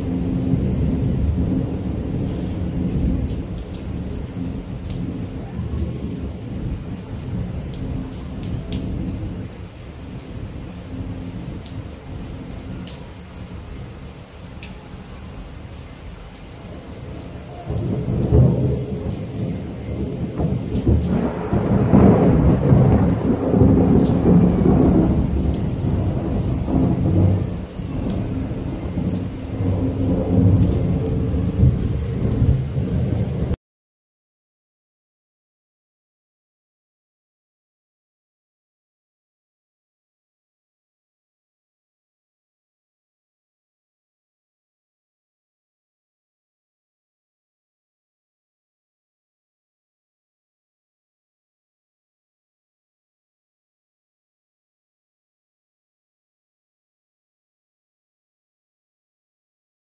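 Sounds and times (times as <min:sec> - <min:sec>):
rolling thunder: 0:00.0 - 0:09.6, 0:17.6 - 0:33.6
steady rain: 0:00.0 - 0:33.6.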